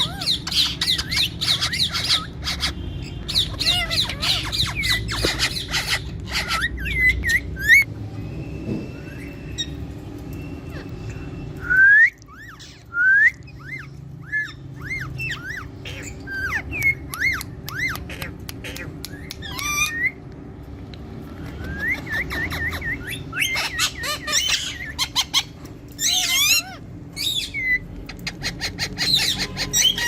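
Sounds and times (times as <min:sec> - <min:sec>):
parrot whistling calls: 0:00.0 - 0:07.9, 0:08.8 - 0:20.2, 0:21.4 - 0:30.0
parrots squawking: 0:00.0 - 0:07.9, 0:09.0 - 0:11.6, 0:12.2 - 0:20.2, 0:21.2 - 0:30.0.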